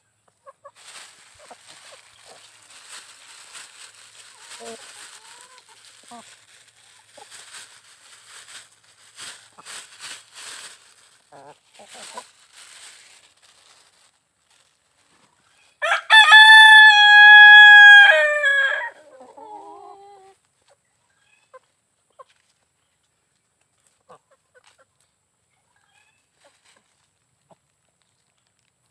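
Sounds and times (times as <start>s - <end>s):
faint scratchy noises: 0.0s - 15.8s
chickens clucking: 0.2s - 7.8s, 10.6s - 12.5s, 19.0s - 22.6s, 23.8s - 27.8s
rooster crowing: 15.8s - 19.0s.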